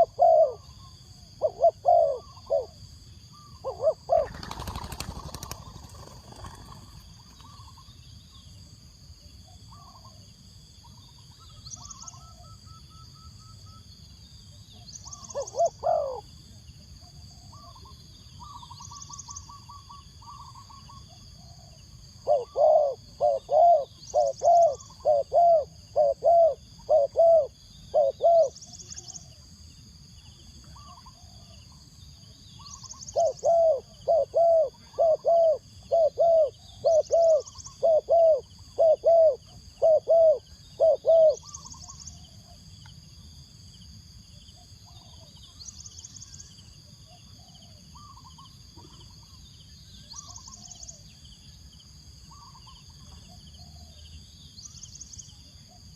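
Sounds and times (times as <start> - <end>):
dove cooing: 0.0 - 2.8, 3.4 - 7.8, 15.1 - 16.3, 17.4 - 29.4, 32.7 - 42.6.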